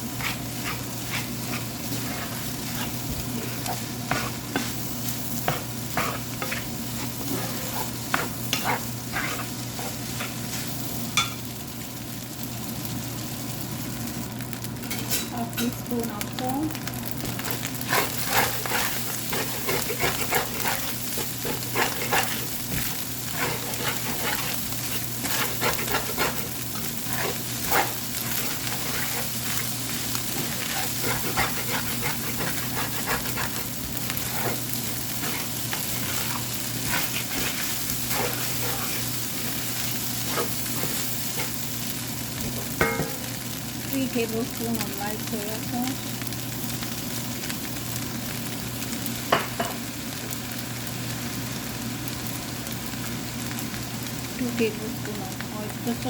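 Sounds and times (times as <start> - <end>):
spatula scraping a pan: 0.0 - 10.8, 17.4 - 41.8, 42.6 - 43.3
rice sizzling in a hot pan: 0.0 - 56.0.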